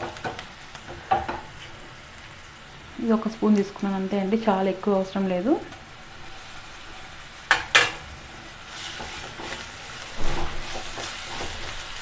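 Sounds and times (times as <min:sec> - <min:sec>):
onions sizzling in a pan: 0:00.0 - 0:12.0
stirring in a pan: 0:05.8 - 0:12.0.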